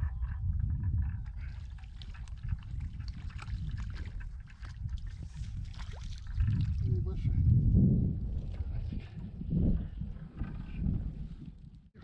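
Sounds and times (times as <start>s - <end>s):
wind rumbling on microphone: 0.0s - 12.0s
light water sounds: 1.0s - 7.3s.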